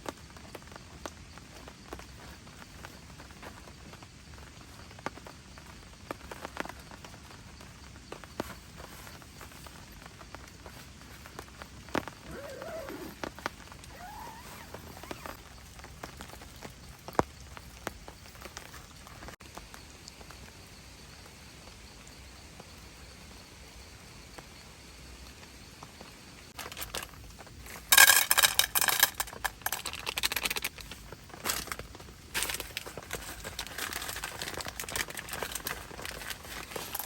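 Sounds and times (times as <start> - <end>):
crinkling plastic rustle: 0.0 - 19.4, 26.5 - 37.0
faint rain patter: 0.0 - 37.0
small ticks: 28.9 - 37.0.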